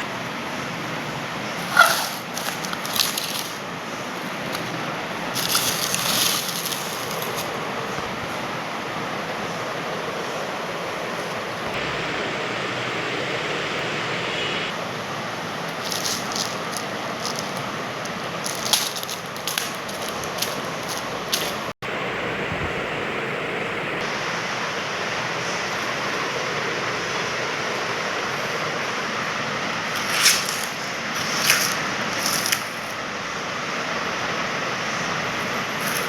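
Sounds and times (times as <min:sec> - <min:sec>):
packaging crinkling and rustling: 0:01.6 - 0:07.6, 0:15.7 - 0:21.8, 0:29.9 - 0:33.0
steady hiss: 0:11.6 - 0:33.0.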